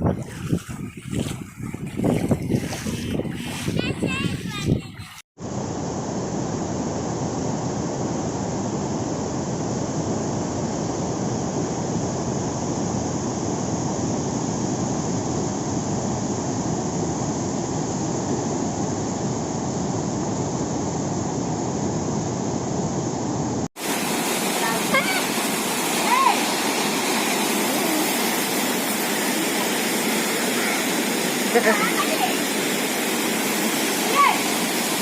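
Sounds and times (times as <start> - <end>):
rushing water from heavy rain: 0.0 - 5.2, 23.7 - 35.0.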